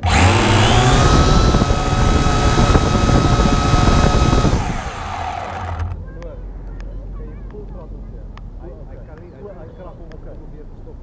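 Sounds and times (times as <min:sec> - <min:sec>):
drone propellers whining: 0:00.0 - 0:06.0.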